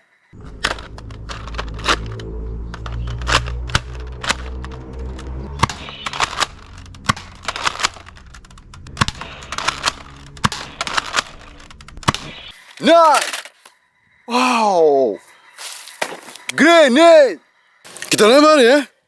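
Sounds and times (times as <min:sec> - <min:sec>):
low steady hum: 0:00.4 - 0:12.1.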